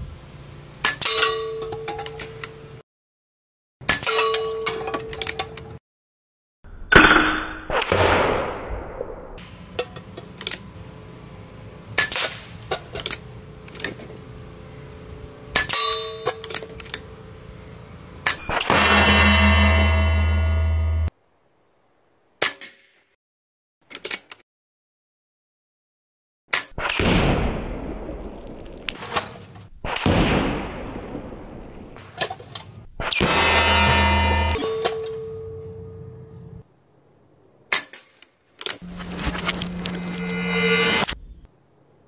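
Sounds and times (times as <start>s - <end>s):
pellets clanging on metal targets: 3.8s - 5.6s, 15.6s - 16.9s, 34.5s - 36.2s
air rifle shots: 12.0s - 12.6s
loud buzzing tone: 15.8s - 21.1s, 33.2s - 36.6s, 38.8s - 41.4s.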